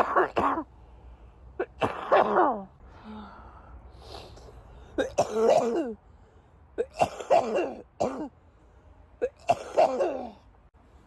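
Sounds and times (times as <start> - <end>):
person coughing: 0.0 - 0.7, 1.6 - 2.7, 5.0 - 6.0, 6.8 - 8.3, 9.2 - 10.4.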